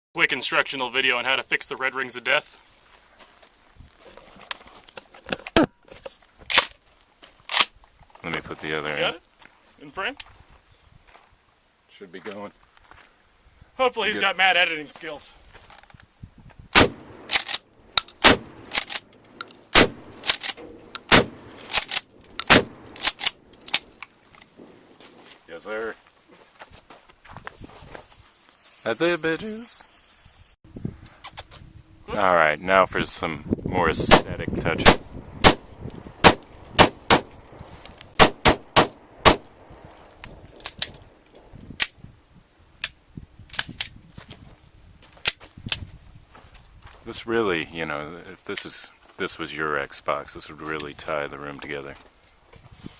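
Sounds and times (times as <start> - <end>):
gunshots: 16.7 - 17.6, 18.2 - 19.0, 19.7 - 23.4, 34.0 - 35.6, 36.2 - 37.3, 38.2 - 39.5
rapid pistol shots: 16.8 - 17.6, 18.2 - 19.0, 19.7 - 23.3, 36.2 - 37.3, 38.2 - 39.5.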